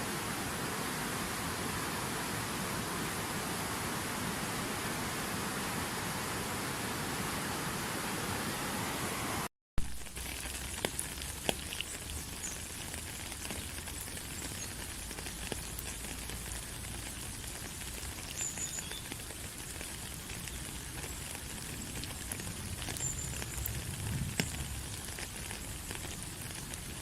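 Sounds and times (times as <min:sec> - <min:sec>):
outdoor hiss: 0:00.0 - 0:27.0
rushing water: 0:00.0 - 0:27.0
light ticks and drips: 0:09.8 - 0:27.0.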